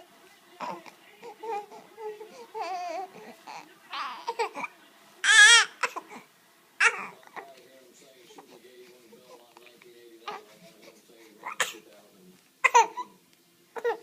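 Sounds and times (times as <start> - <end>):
baby babbling and cooing: 0.6 - 6.2, 6.8 - 7.5, 10.2 - 10.7, 12.6 - 13.1, 13.8 - 14.0.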